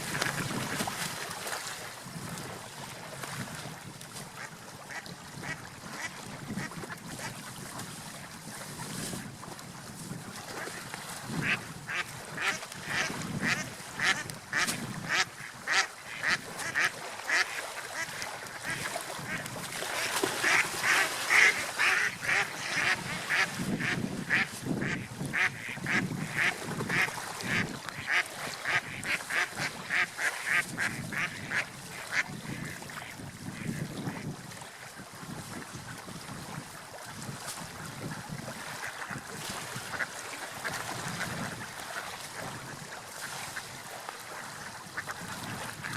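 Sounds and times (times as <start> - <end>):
water and wind: 0.0 - 45.9
ducks quacking: 4.9 - 7.3, 11.4 - 19.4, 20.0 - 33.9.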